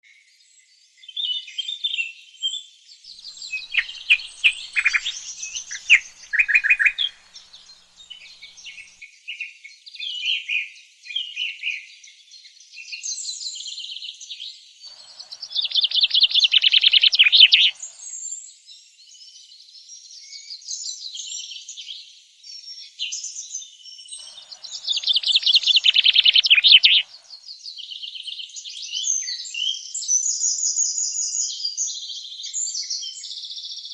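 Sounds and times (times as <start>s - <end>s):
rapid bird trills: 3.2s - 8.9s, 14.9s - 18.1s, 24.2s - 27.4s
songbirds chirping and singing: 3.2s - 9.0s, 14.9s - 18.4s, 24.1s - 27.6s.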